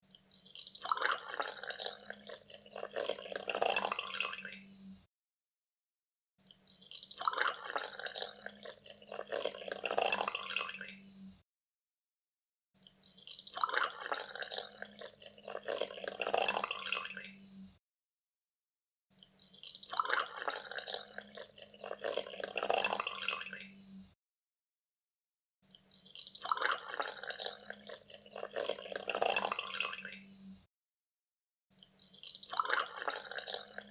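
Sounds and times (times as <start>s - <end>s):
coffee being poured: 0.4s - 4.7s, 6.8s - 11.0s, 13.2s - 17.4s, 19.5s - 23.8s, 26.0s - 30.2s, 32.1s - 33.9s.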